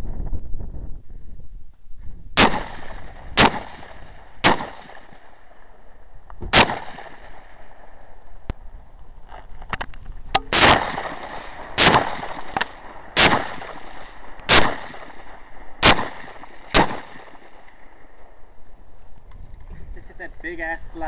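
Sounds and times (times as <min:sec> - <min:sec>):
gunshots with ringing echo: 0:02.4 - 0:08.4, 0:10.5 - 0:18.5.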